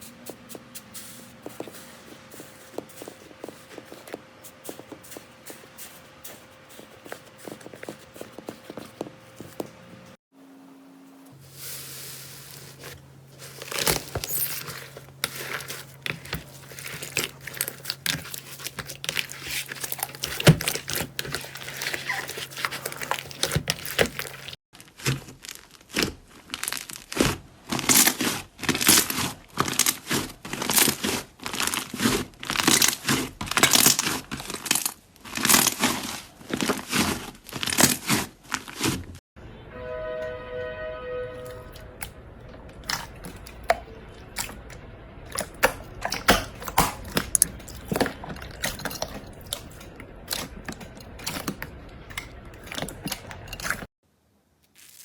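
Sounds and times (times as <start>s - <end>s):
slime crackling and crinkling: 11.4s - 39.2s, 41.4s - 53.9s, 54.6s - 55.0s.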